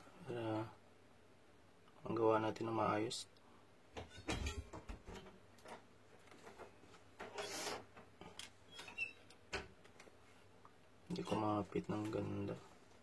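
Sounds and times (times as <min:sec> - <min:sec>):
brief rustling hiss: 0:07.3 - 0:07.9.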